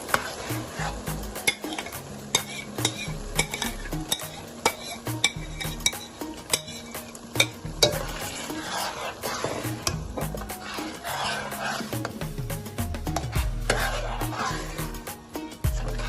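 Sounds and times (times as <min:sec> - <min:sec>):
stew sizzling in oil: 0:00.0 - 0:16.0.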